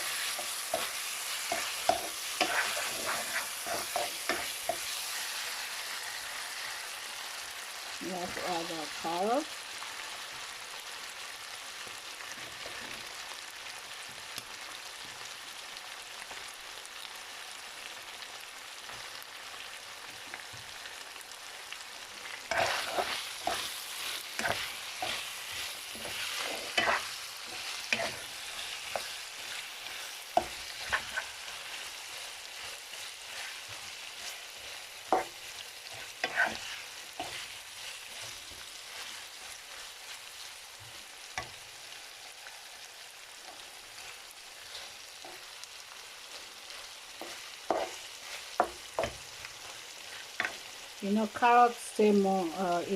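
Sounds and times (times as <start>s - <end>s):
metal spatula scraping a wok: 0.0s - 5.1s, 22.5s - 31.9s, 32.6s - 39.3s, 46.8s - 49.2s
chicken sizzling in a wok: 0.0s - 52.9s.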